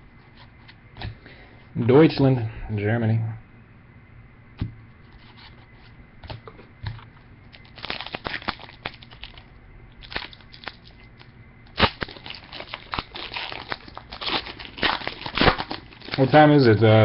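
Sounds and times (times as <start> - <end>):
foil wrapper crinkling: 7.5 - 16.8.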